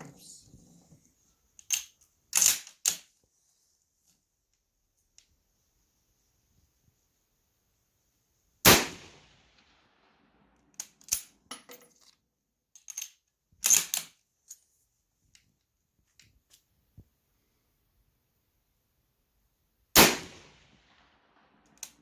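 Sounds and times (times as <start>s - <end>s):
rifle bolt clicks and clacks: 1.6s - 3.1s, 10.7s - 12.2s, 12.8s - 14.2s, 21.7s - 22.0s
rifle shot: 8.6s - 10.4s, 20.0s - 22.0s.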